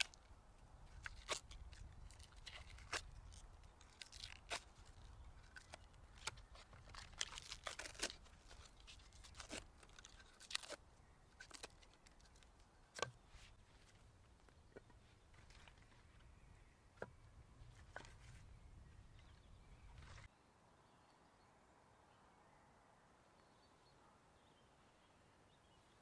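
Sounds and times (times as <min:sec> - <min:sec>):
crisp crunches and crackles: 0:00.0 - 0:16.3.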